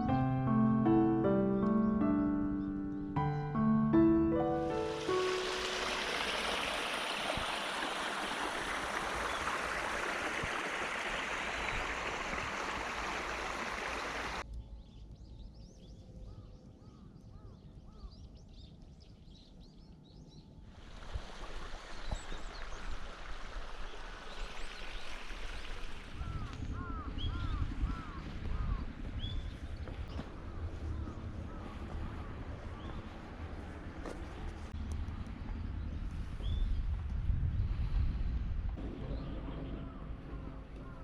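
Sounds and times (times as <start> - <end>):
stream water rushing: 4.4 - 14.4, 20.8 - 26.4
birds calling: 4.8 - 14.4, 24.4 - 33.2, 38.8 - 41.0.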